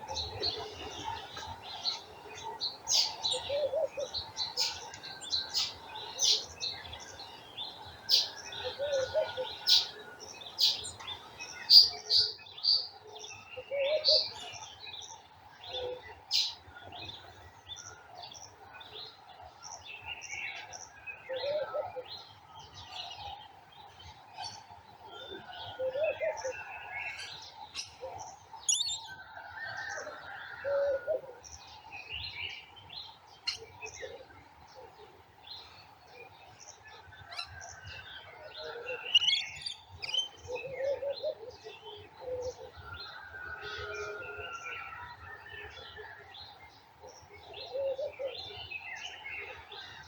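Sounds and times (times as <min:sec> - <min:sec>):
dove cooing: 0:00.0 - 0:06.8, 0:07.6 - 0:11.4, 0:13.7 - 0:14.3, 0:21.3 - 0:22.0, 0:25.1 - 0:27.4, 0:29.8 - 0:31.4, 0:38.4 - 0:44.6, 0:47.5 - 0:48.6
birds chirping and singing: 0:00.0 - 0:50.0.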